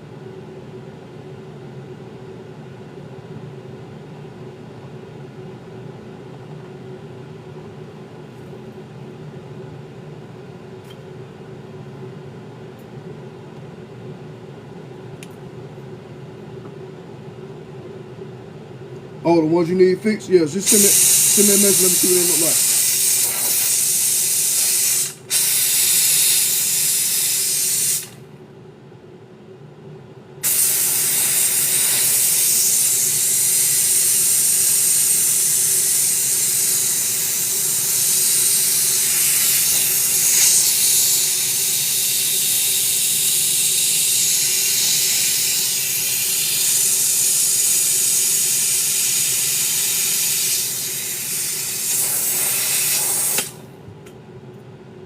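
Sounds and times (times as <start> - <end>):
tool blowing hissing jet: 20.5 - 28.2, 30.4 - 53.7.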